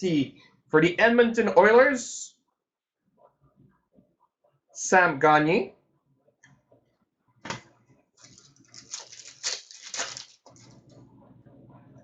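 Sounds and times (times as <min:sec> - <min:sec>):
cards rustling and sliding: 0:08.2 - 0:10.8.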